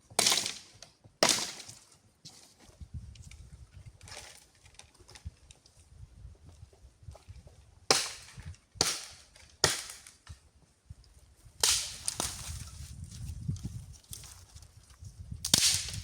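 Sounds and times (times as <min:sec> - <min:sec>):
sharp cracks: 0:11.6 - 0:12.4, 0:15.4 - 0:16.0.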